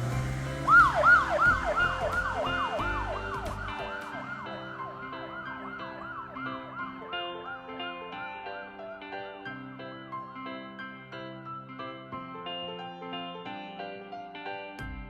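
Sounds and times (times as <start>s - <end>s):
background music: 0.0s - 15.0s
police siren yelping: 0.6s - 8.2s.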